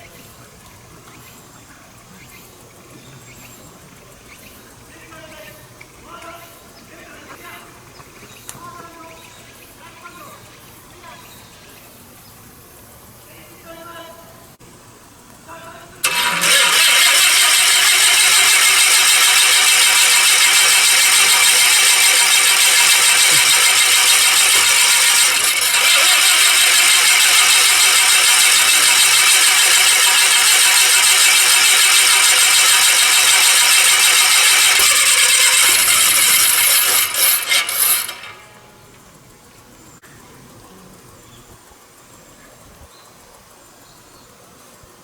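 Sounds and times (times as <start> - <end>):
aircraft engine sputtering: 16.0 - 39.3.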